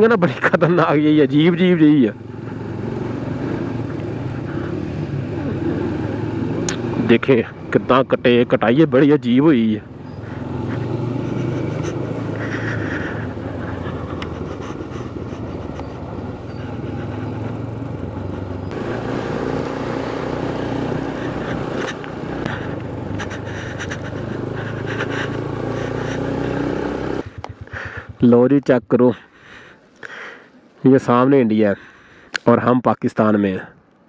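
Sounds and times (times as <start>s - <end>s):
wind and road noise: 0.0s - 32.8s
motorcycle engine running: 1.2s - 28.5s.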